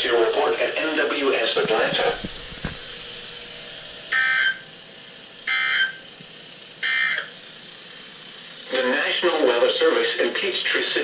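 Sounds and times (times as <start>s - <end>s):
harsh two-tone data bursts: 4.1s - 4.7s, 5.4s - 6.1s.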